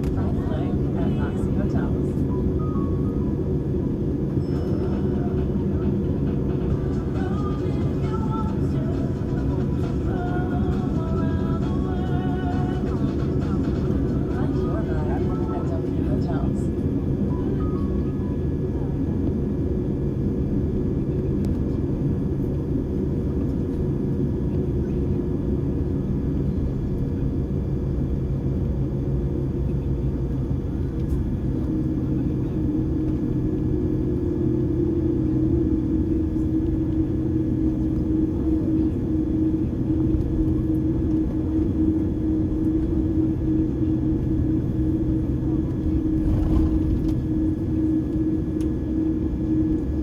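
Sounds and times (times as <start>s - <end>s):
jet cabin engine rumble: 0.0s - 50.0s
rising engine hum: 28.4s - 50.0s.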